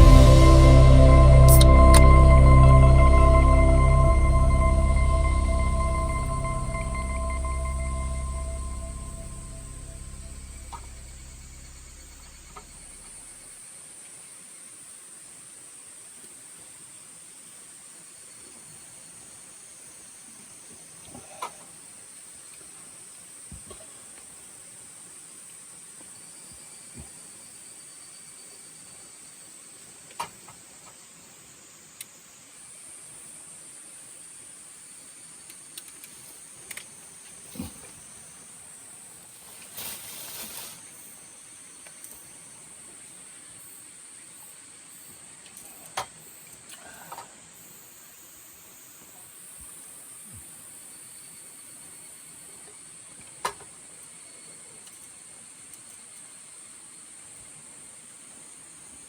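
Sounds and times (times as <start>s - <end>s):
faint sharp clicks: 35.5s - 36.9s.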